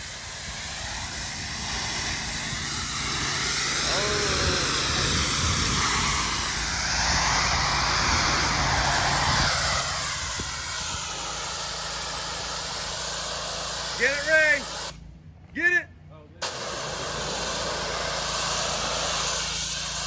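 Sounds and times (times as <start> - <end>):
water spray hiss: 0.0 - 15.0, 16.4 - 20.0
pressure washer engine hum: 0.0 - 15.3, 16.4 - 20.0.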